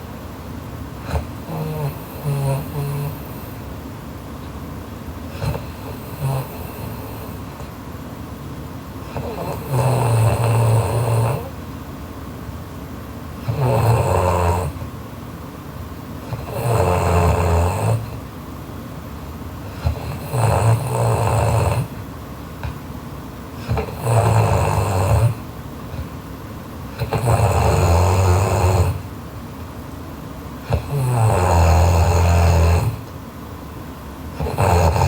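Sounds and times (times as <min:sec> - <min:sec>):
loud snoring: 0:01.0 - 0:03.6, 0:05.3 - 0:07.7, 0:09.0 - 0:11.6, 0:13.4 - 0:14.8, 0:16.2 - 0:18.2, 0:19.7 - 0:22.0, 0:23.6 - 0:26.2, 0:26.9 - 0:29.1, 0:30.6 - 0:33.1, 0:34.3 - 0:35.0
quiet breathing: 0:01.0 - 0:03.8, 0:05.3 - 0:07.9.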